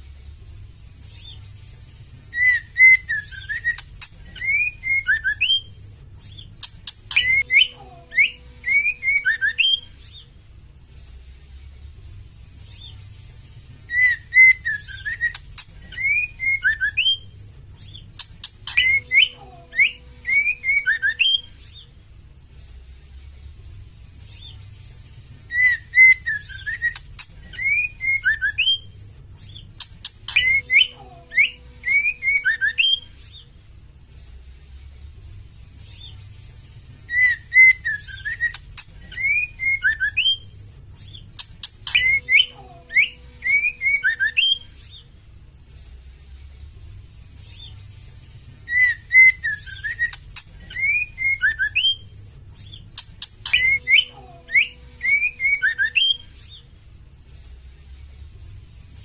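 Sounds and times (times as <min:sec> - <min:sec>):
faint low hum: 0:00.0 - 0:59.0
bird singing whistled phrases: 0:02.3 - 0:05.7, 0:06.3 - 0:10.3, 0:13.8 - 0:21.9, 0:25.4 - 0:33.4, 0:37.0 - 0:40.5, 0:41.1 - 0:45.0, 0:48.6 - 0:56.6.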